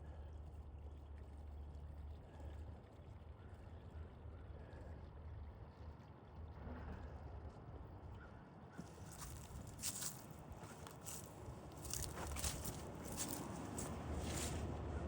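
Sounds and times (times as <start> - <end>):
vehicle driving low rumble: 8.8 - 15.0
road noise hiss: 8.9 - 15.0.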